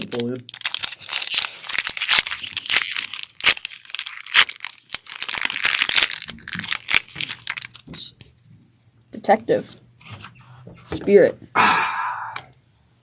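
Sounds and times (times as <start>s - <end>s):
plastic wrapper tearing and crinkling: 0.0s - 8.1s.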